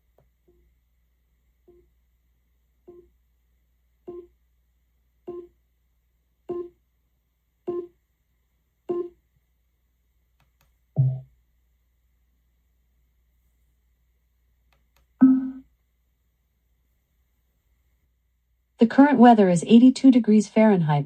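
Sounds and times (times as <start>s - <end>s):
short beep tones: 15.2s - 15.6s.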